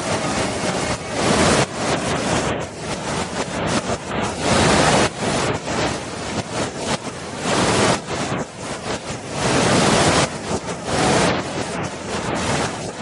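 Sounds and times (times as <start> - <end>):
waterfall roar: 0.0 - 13.0.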